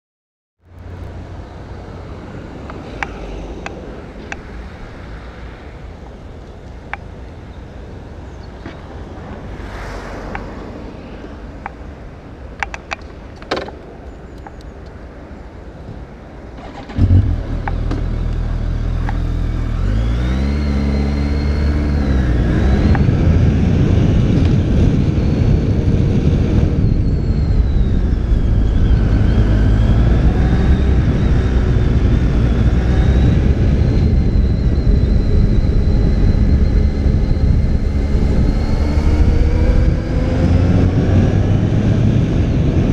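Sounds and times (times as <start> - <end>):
motorcycle engine starting and running: 16.6 - 42.9.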